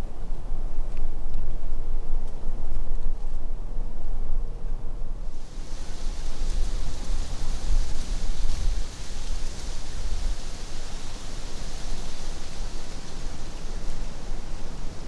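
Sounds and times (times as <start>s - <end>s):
steady high hiss: 5.3s - 15.0s
wind buffeting microphone: 5.6s - 15.0s.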